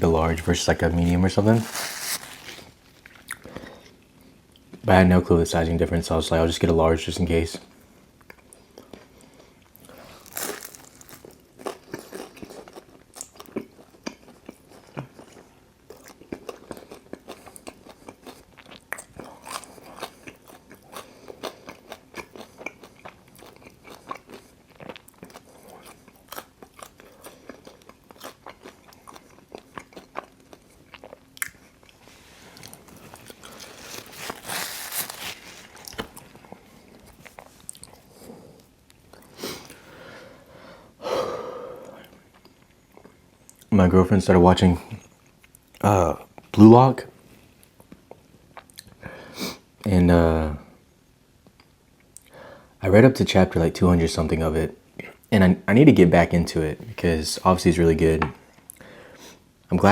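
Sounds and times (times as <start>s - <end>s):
chewing and crunching pizza: 0.5s - 4.8s, 8.2s - 39.8s.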